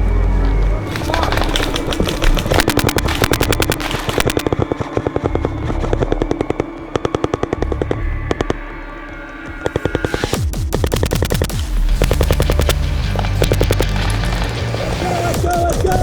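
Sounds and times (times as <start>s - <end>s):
automatic gunfire: 0.9s - 5.3s, 9.7s - 16.0s.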